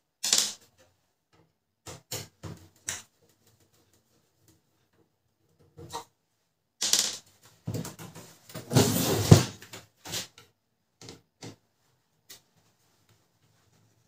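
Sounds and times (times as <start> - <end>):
plastic parts clattering and scraping: 6.8 - 10.3.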